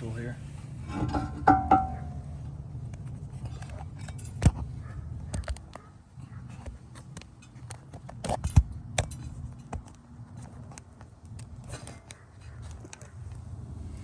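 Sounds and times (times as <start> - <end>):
metal tool clicks and knocks: 1.0 - 2.0.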